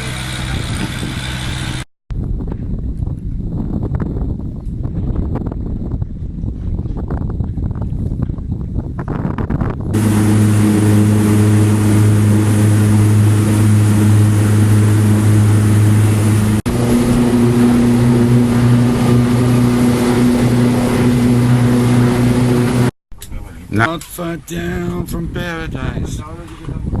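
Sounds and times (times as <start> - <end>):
motorboat engine drone: 0.0 - 1.8, 9.9 - 23.0.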